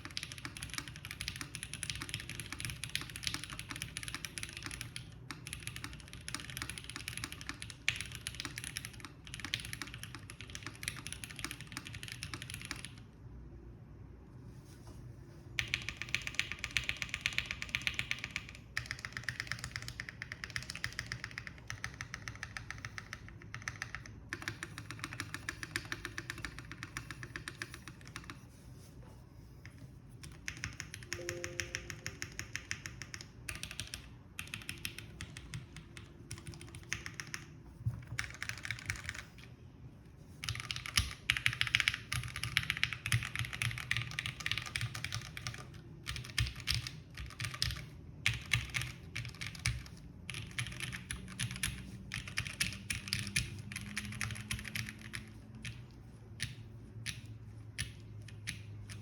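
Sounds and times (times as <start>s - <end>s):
fast mechanical keyboard typing: 0.0s - 13.1s, 15.6s - 28.4s, 29.8s - 39.6s, 40.4s - 59.0s.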